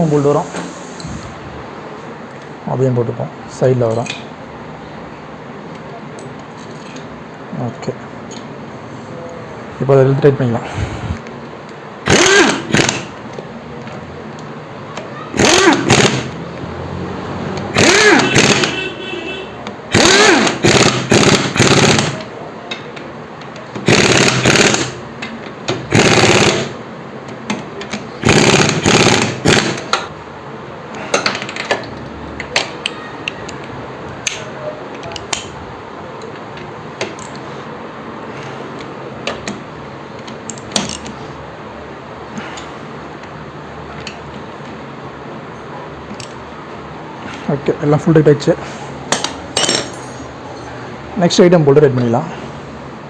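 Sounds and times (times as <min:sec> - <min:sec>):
rapid wrench bursts: 0:12.0 - 0:13.2, 0:15.3 - 0:16.4, 0:17.6 - 0:18.9, 0:19.9 - 0:22.4, 0:23.7 - 0:26.8, 0:27.8 - 0:30.1.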